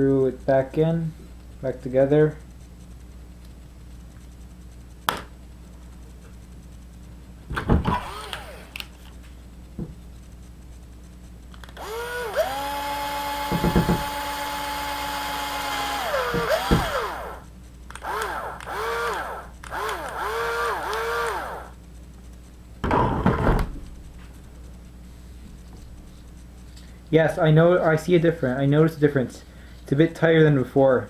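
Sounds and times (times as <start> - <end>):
electric motor whine: 7.8 - 8.9, 11.8 - 17.4, 18.0 - 21.8.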